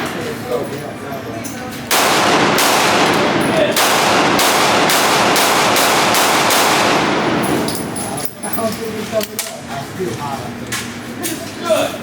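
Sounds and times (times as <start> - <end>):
echoing gunshots: 1.9 - 8.0.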